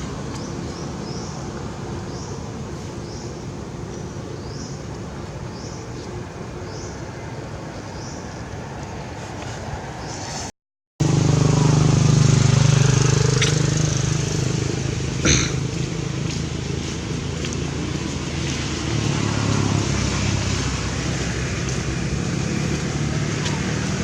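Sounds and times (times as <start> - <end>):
motor engine running: 11.0 - 17.4.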